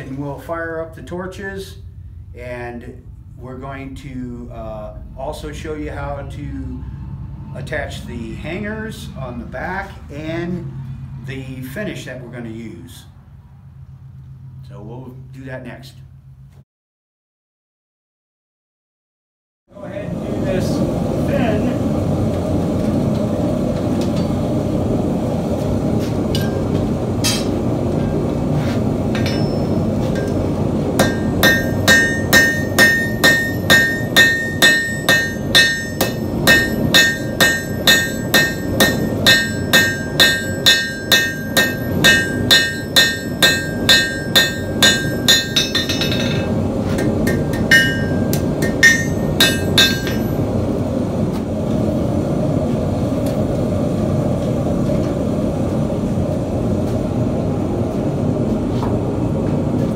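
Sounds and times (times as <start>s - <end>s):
hammer striking metal on anvil: 26.3s - 28.2s, 29.1s - 50.5s.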